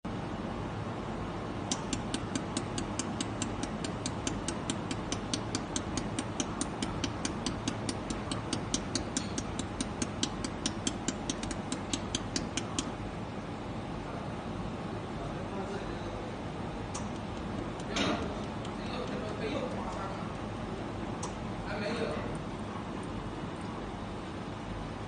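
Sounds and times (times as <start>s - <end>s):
steady machine hum: 0.1s - 25.0s
laser welder ticking: 1.7s - 13.0s.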